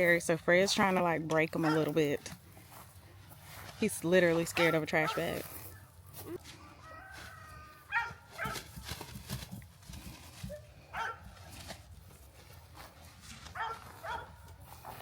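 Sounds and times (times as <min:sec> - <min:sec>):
dog barking: 0:01.6 - 0:02.0, 0:04.6 - 0:05.3, 0:07.9 - 0:08.7, 0:10.5 - 0:11.2, 0:13.6 - 0:14.4.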